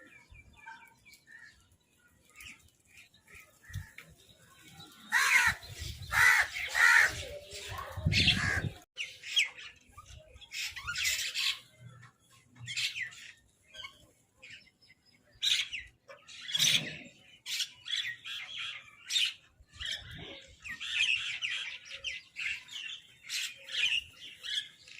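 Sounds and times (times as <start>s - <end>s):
crows cawing: 5.1s - 7.2s.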